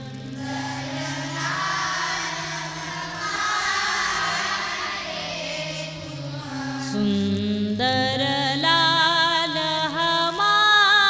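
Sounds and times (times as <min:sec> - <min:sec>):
steady low drone: 0:00.0 - 0:08.8
devotional singing: 0:00.0 - 0:11.0.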